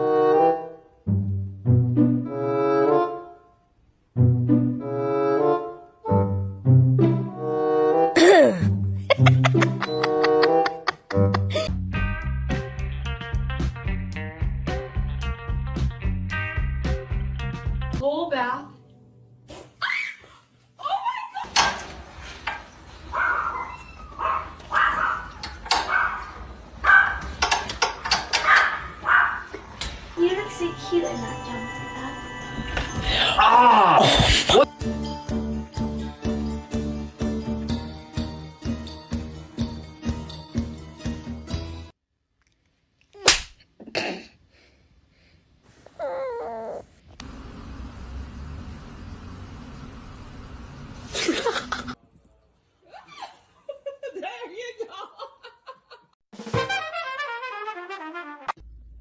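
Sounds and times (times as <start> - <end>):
pet animal crying out: 46.0 - 46.9.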